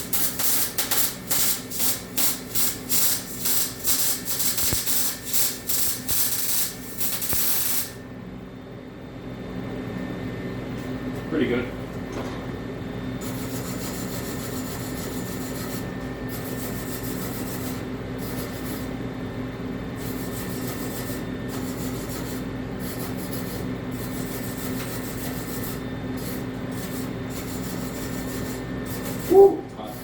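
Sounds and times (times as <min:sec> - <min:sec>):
welder arc crackling and hissing: 0:00.0 - 0:08.0, 0:13.2 - 0:19.0, 0:20.0 - 0:30.0
electrical hum: 0:00.0 - 0:30.0.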